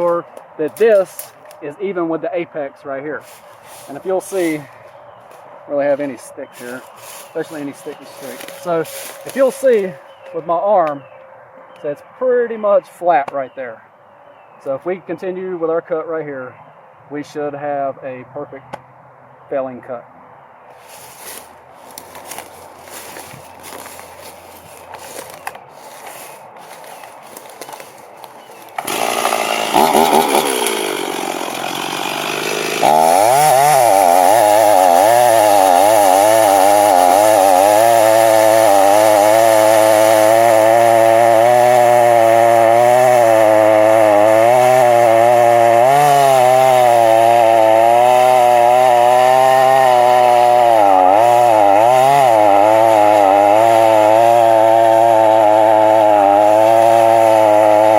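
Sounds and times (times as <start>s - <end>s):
chainsaw cutting trunk: 3.3s - 4.8s, 6.6s - 10.0s, 20.8s - 57.9s.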